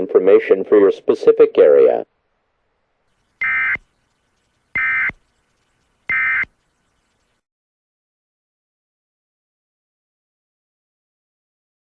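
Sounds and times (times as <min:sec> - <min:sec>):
short digital data tones: 0:03.2 - 0:07.4.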